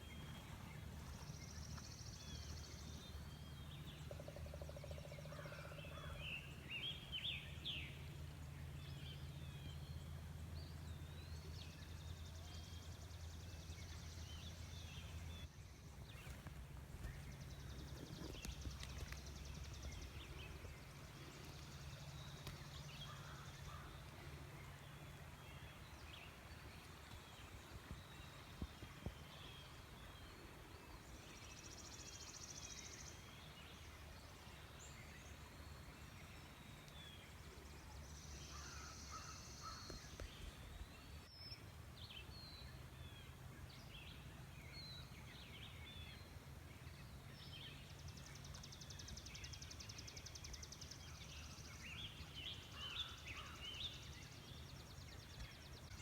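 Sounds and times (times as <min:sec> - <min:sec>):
steady low rumble: 0:07.8 - 0:31.8
birds chirping: 0:10.7 - 0:56.0.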